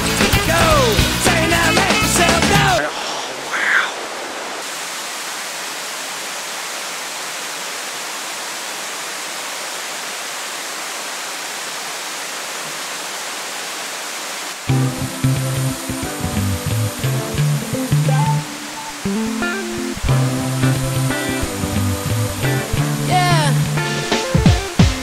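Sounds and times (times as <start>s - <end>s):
background music: 0.0s - 2.8s, 14.7s - 25.0s
waterfall rushing: 0.0s - 25.0s.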